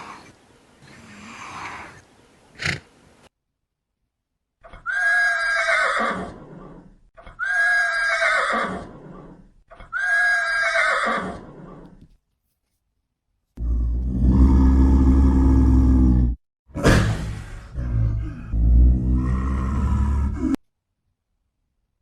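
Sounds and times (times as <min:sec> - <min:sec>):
horse whinny: 0:04.7 - 0:11.9.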